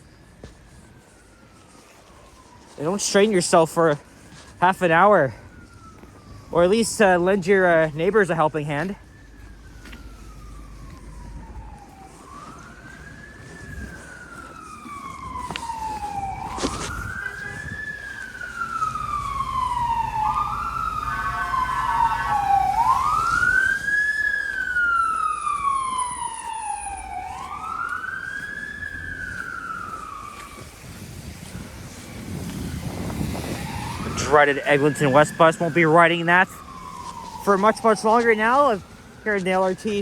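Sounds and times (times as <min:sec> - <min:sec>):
emergency siren wailing: 0:00.0 - 0:40.0
horn blaring: 0:15.3 - 0:23.8.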